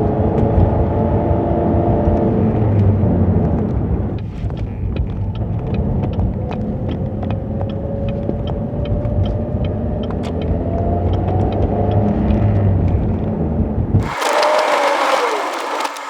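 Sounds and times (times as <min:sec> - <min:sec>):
car engine rumbling: 0:14.0 - 0:16.0.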